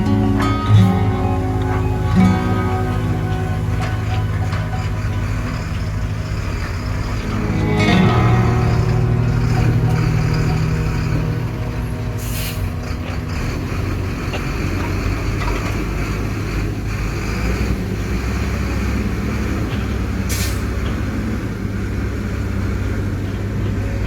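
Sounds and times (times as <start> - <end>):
heavy diesel machinery rumbling: 0.0 - 24.0
compressed air hisses: 12.2 - 12.7.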